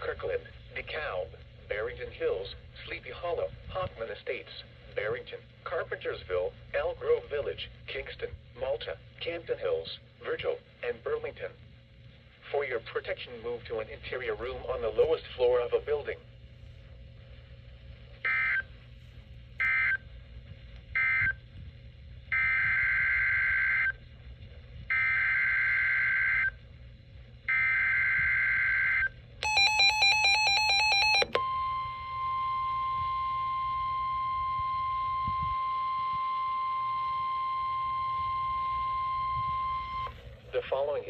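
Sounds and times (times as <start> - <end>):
steady alarm tone: 27.5 - 40.2
rapid pulsing beep: 29.4 - 40.1.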